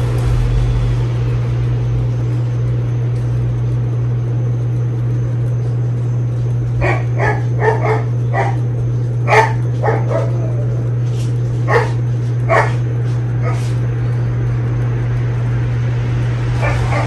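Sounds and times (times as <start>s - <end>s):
steady low hum: 0.0s - 17.0s
dog barking: 6.8s - 8.6s, 9.2s - 10.6s, 11.6s - 13.7s, 16.6s - 17.0s.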